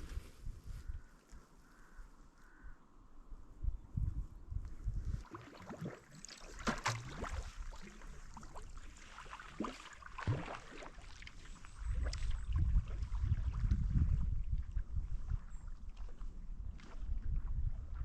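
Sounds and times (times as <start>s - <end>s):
wind rumble on microphone: 0.0s - 2.6s, 3.2s - 5.4s, 11.4s - 18.0s
paddle splashing in water: 5.2s - 17.5s.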